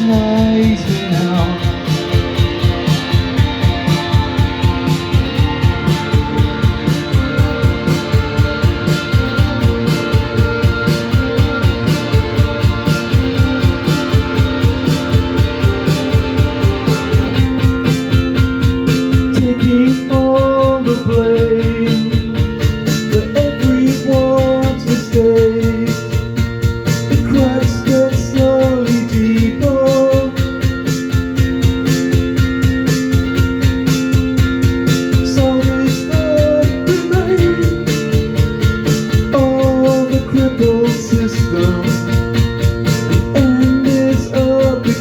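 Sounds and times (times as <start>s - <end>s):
guitars: 0.0s - 45.0s
melodic lead line: 0.0s - 45.0s
steady drum beat: 0.0s - 45.0s.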